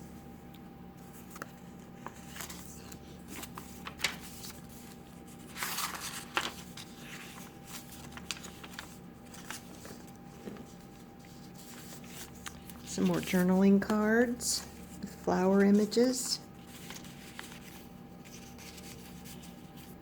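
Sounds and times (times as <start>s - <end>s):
page-turning rustle: 1.0s - 20.0s.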